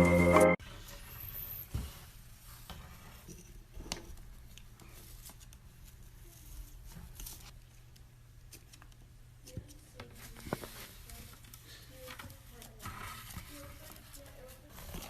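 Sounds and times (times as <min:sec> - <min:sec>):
electronic organ music: 0:00.0 - 0:00.6.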